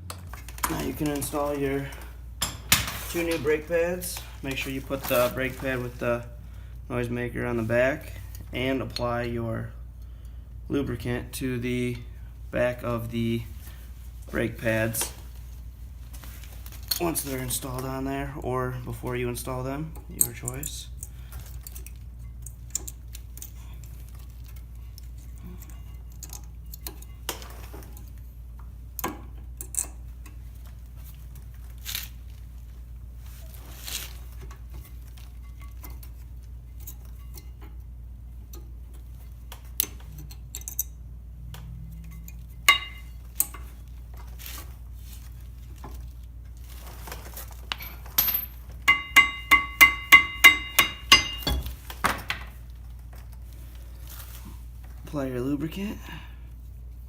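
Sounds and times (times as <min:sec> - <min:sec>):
ringing metal taps: 0:42.0 - 0:43.6, 0:47.7 - 0:51.7.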